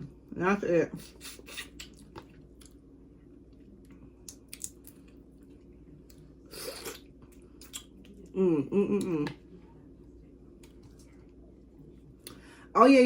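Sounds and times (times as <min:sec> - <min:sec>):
wet chewing and squishing: 0:03.4 - 0:08.3.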